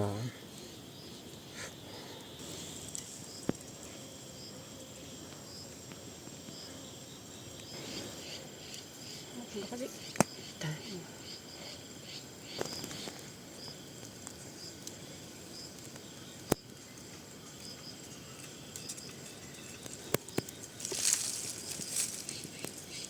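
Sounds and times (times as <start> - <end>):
faint high chirping: 16.0 - 23.0.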